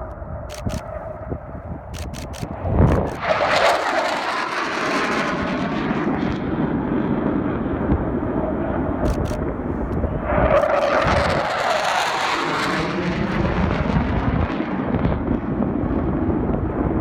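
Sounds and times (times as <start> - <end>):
jet engines roaring: 0.0 - 17.0
camera shutter clicks: 0.5 - 0.9, 2.0 - 3.2, 9.0 - 9.4, 10.5 - 11.1.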